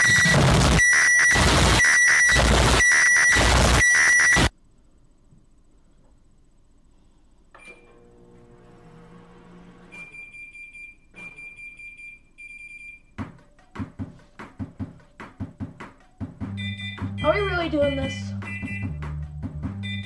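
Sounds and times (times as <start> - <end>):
long high beeps: 0.0 - 4.5
microwave humming: 7.5 - 11.9.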